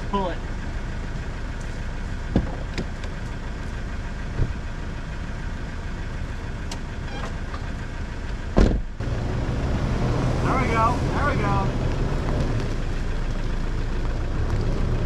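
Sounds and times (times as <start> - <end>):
vehicle engine idling: 0.0 - 15.0.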